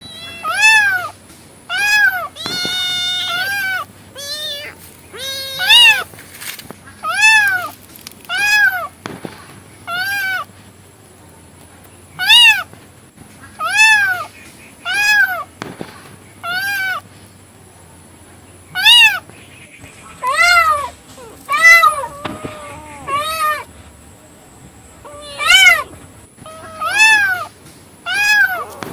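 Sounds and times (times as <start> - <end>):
cat meowing: 0.0 - 1.1, 1.7 - 6.1, 7.0 - 7.7, 8.3 - 8.9, 9.9 - 10.5, 12.2 - 12.7, 13.6 - 14.3, 14.9 - 15.5, 16.4 - 17.0, 18.8 - 19.2, 20.2 - 23.7, 25.0 - 28.9.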